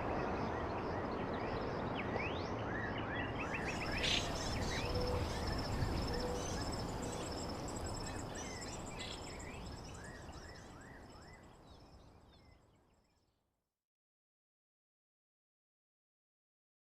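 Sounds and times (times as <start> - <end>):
birds chirping: 3.5 - 10.7
insects trilling: 3.6 - 10.7.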